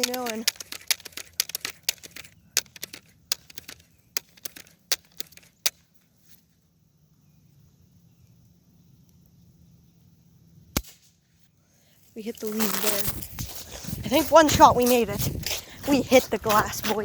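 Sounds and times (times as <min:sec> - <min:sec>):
bb gun mechanical clicks: 0:00.0 - 0:05.9.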